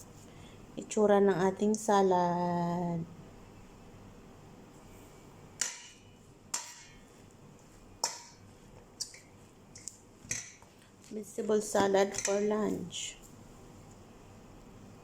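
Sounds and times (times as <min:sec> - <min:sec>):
dishes and utensils clinking: 0:12.1 - 0:12.5.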